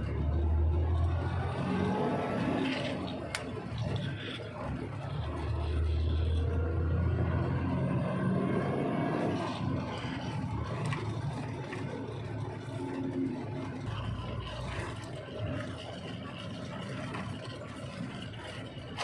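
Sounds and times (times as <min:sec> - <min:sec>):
heavy truck engine rumble: 0:00.0 - 0:19.0.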